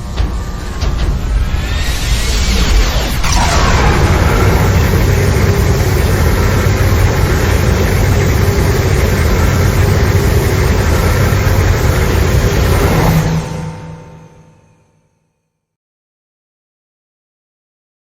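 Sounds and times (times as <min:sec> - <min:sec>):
monster rumbling sound effect: 0:00.3 - 0:13.8.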